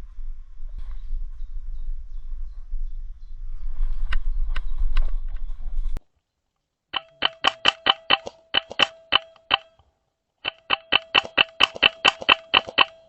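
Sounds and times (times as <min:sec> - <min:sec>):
airsoft rifle shots: 0:07.0 - 0:09.8, 0:10.4 - 0:13.0.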